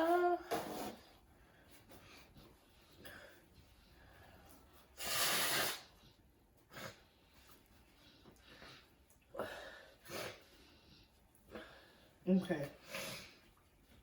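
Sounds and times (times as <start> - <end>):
hard sniff: 4.8 - 7.1, 9.9 - 10.9.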